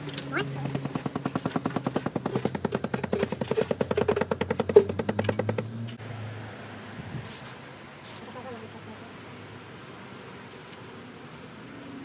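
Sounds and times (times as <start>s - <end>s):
power hammer chipping concrete: 0.4s - 5.5s.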